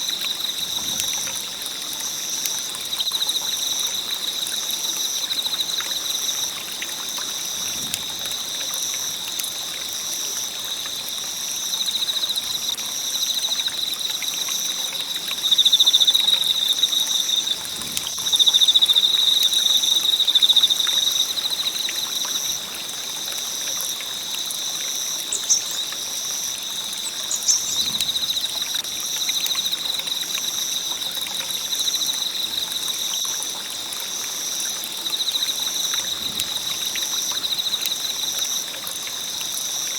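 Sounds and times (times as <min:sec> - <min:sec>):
high-pitched insect chorus: 0:00.0 - 0:33.5
pulsing insect call: 0:14.6 - 0:22.6.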